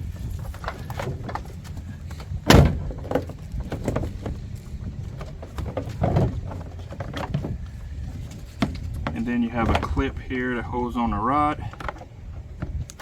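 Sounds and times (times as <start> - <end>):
dull thump: 0.3 - 10.2.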